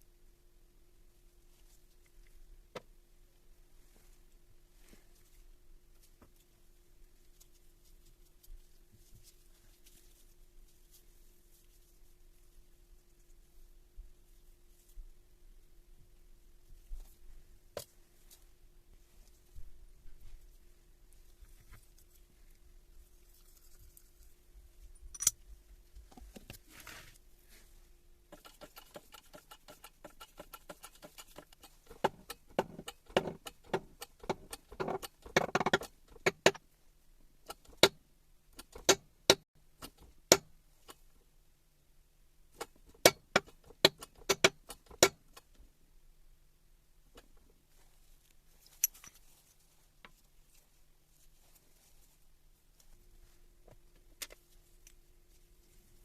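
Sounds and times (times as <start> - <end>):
metal tools clinking on workbench: 25.1 - 25.4.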